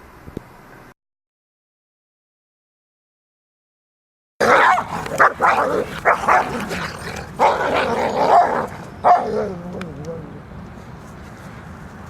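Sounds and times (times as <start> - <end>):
dog barking: 4.4 - 9.8.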